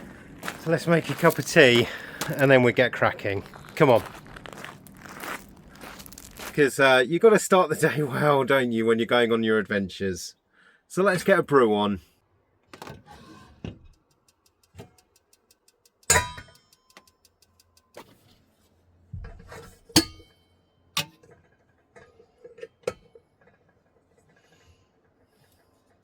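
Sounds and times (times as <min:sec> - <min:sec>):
rapid even ticks: 0:14.0 - 0:18.0
metal cookware clinks and knocks: 0:16.1 - 0:16.7, 0:19.9 - 0:20.4.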